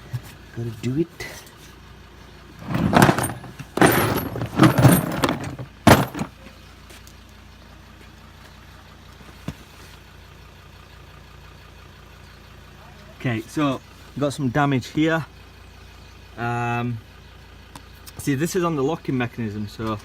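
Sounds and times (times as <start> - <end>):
vehicle engine idling: 0.0 - 20.0
plastic tool case clattering: 2.6 - 6.3.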